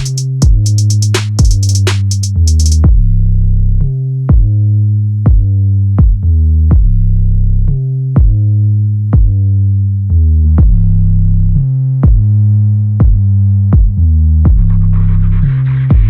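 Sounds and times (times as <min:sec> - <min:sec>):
drum-machine beat: 0:00.0 - 0:03.0
synthesizer bass line: 0:00.0 - 0:03.2.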